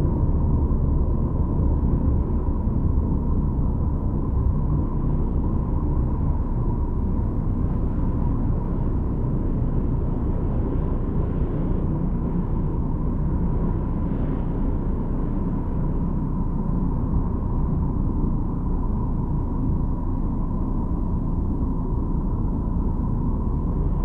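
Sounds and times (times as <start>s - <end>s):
deep noisy drone: 0.0s - 24.0s.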